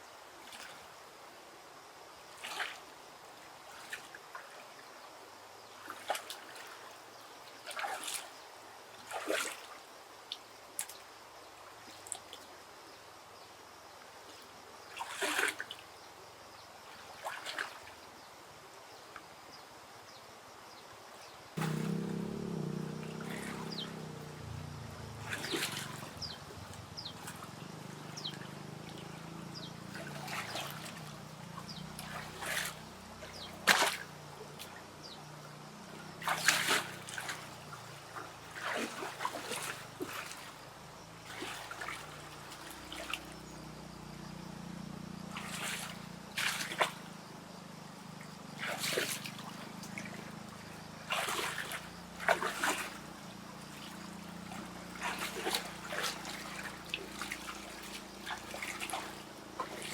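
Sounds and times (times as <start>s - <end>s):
water splashing and trickling: 0.4s - 0.9s, 2.3s - 2.9s, 3.6s - 4.8s, 5.8s - 8.4s, 9.0s - 11.1s, 14.9s - 15.9s, 16.8s - 18.0s, 21.6s - 59.9s
steady low hum: 21.6s - 36.2s.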